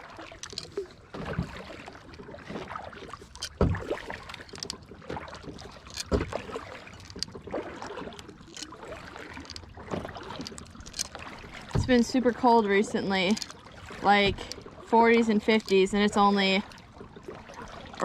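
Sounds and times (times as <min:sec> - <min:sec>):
paddle strokes splashing in water: 0:00.0 - 0:18.0.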